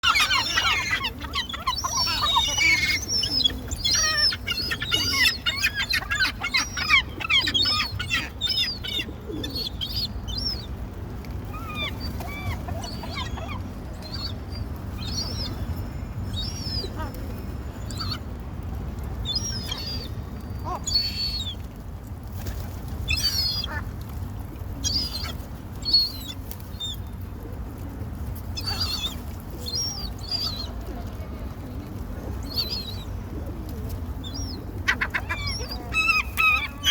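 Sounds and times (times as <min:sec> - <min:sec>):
birds chirping: 0:00.0 - 0:10.7.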